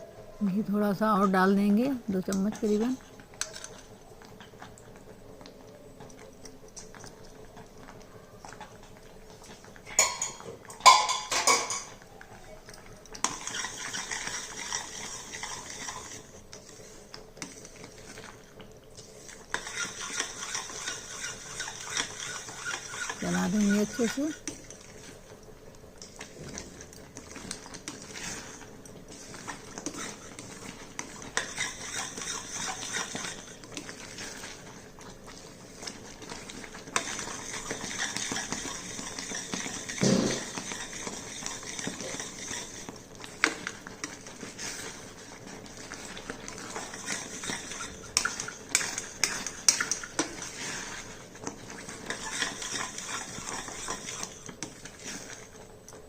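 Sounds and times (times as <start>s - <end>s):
utensil scraping a pan: 13.2s - 18.2s, 19.2s - 24.8s, 26.3s - 34.7s, 35.7s - 55.6s.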